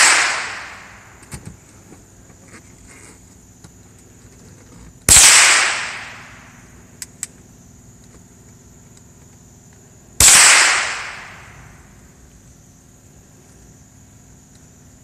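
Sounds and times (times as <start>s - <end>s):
rifle shots with echo: 0.0s - 1.1s, 5.1s - 6.4s, 10.2s - 11.7s.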